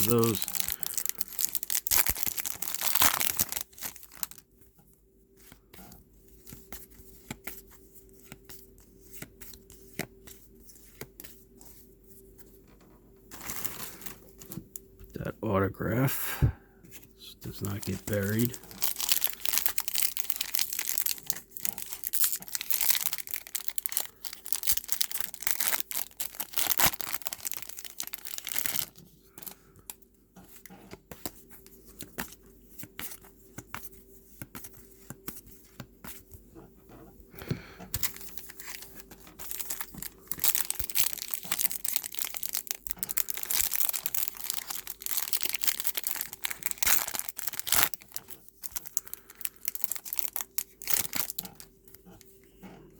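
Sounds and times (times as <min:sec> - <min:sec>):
foil wrappers crinkling: 0:00.0 - 0:04.5, 0:13.3 - 0:14.7, 0:17.5 - 0:29.9, 0:37.9 - 0:52.3.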